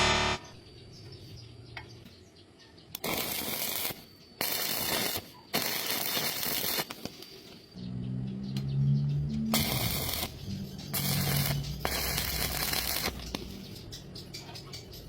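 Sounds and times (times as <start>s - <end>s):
welding arc crackling: 0.0s - 0.5s, 3.0s - 7.5s, 9.5s - 13.7s.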